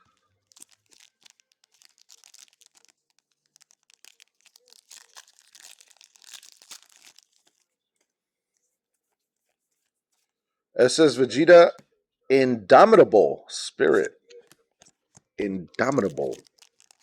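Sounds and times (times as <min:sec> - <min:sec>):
foil wrapper crinkling and tearing: 0:00.0 - 0:07.7, 0:14.5 - 0:17.0.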